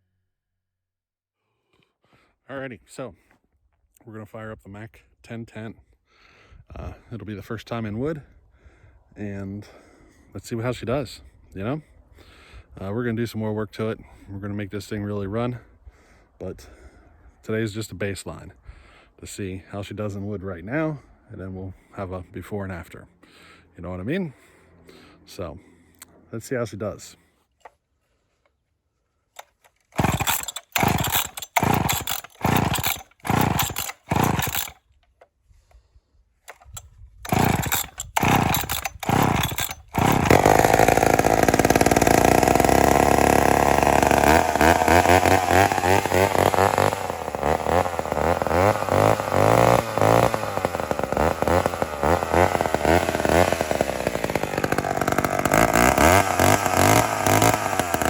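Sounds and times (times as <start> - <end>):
chainsaw engine running: 29.4 - 34.9, 36.5 - 58.0
starter cord pulls: 29.4 - 35.3, 36.5 - 58.0.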